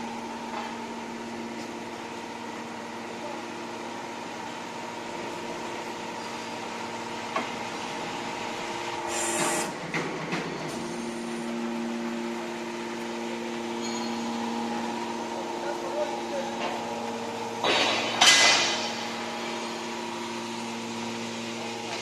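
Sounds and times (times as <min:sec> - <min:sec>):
hydraulic baler humming: 0:00.0 - 0:22.0.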